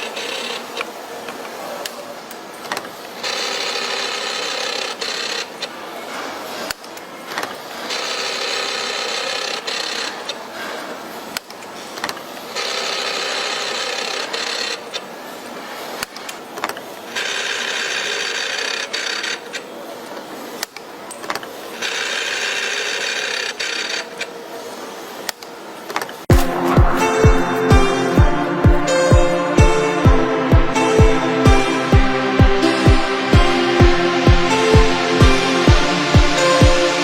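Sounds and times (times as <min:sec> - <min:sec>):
machine rasping: 0:00.0 - 0:00.9, 0:03.0 - 0:05.8, 0:07.8 - 0:10.4, 0:12.5 - 0:15.1, 0:21.7 - 0:24.3.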